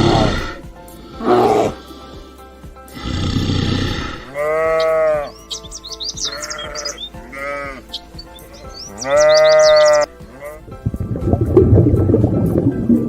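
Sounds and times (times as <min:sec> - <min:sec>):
sheep bleating: 0:03.4 - 0:08.0, 0:08.6 - 0:10.7.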